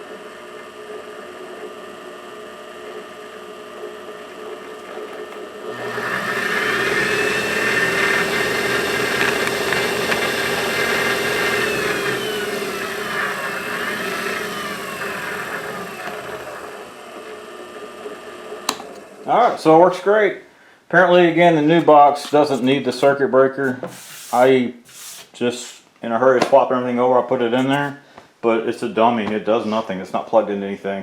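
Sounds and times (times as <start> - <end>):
lathe motor whine: 0.0 - 19.8.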